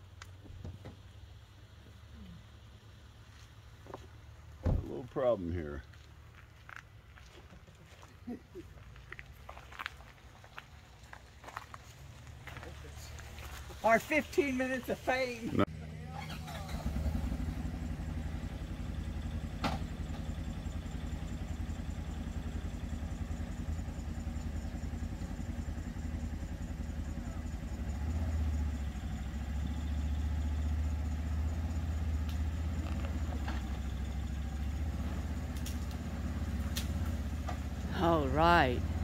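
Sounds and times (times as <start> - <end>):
vehicle engine rumbling: 0.0 - 39.0.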